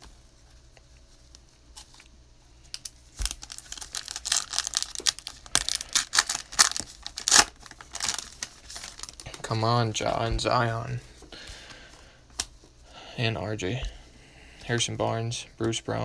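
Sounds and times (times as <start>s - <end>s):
plastic wrapper tearing and crinkling: 2.8s - 9.4s.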